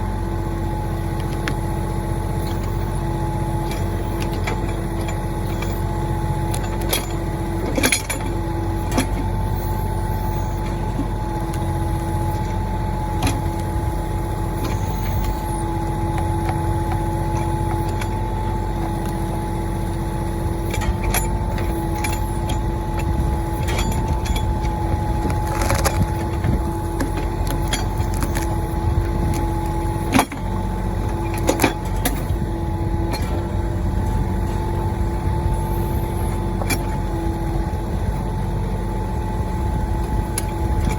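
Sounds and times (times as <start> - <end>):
hydraulic whine: 0.0 - 40.9
tractor diesel engine running: 0.0 - 40.9.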